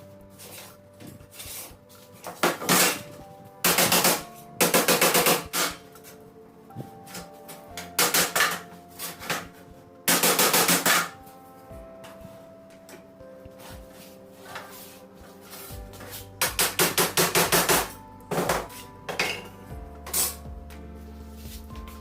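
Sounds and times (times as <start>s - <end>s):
rapid hammer blows on metal: 3.6s - 5.8s, 10.1s - 11.1s.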